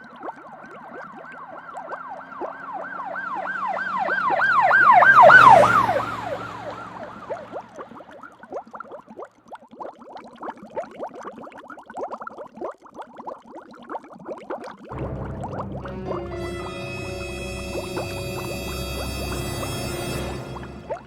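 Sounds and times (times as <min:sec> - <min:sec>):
emergency siren yelping: 0:00.4 - 0:08.0.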